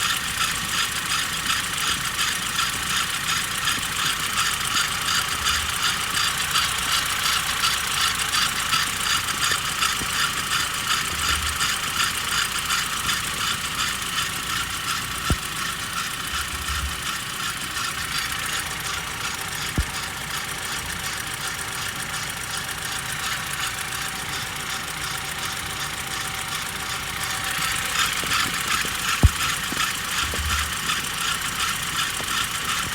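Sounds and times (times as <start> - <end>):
fast ticking from engine belt: 0.0 - 32.9
petrol engine idling: 0.0 - 32.9
sharp clicks: 25.4 - 32.9.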